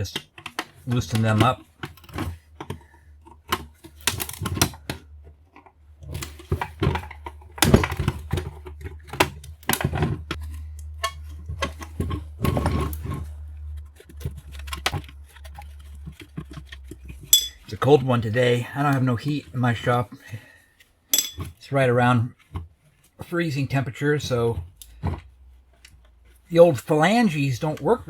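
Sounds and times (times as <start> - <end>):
steady low hum: 1.1 - 20.3
metal tools clinking on fittings: 17.2 - 17.7, 21.1 - 21.6.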